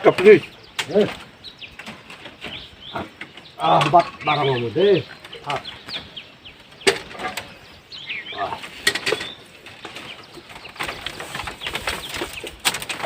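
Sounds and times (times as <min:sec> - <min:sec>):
birds chirping: 0:00.0 - 0:13.0
sharp clicks or knocks: 0:06.7 - 0:07.6.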